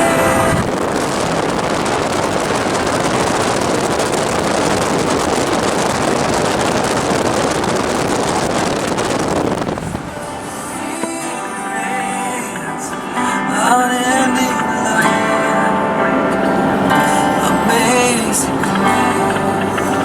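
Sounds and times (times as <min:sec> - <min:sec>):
wind on microphone: 0:00.0 - 0:11.2.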